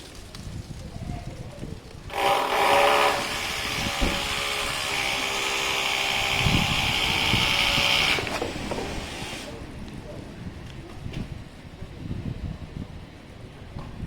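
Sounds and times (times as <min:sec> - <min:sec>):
electric power tool whining: 0:02.1 - 0:09.6.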